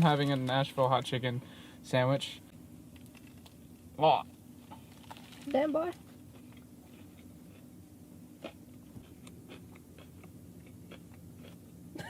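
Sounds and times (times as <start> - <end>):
low steady hum: 0.0 - 12.0
chewing food: 6.3 - 7.7, 8.4 - 11.7.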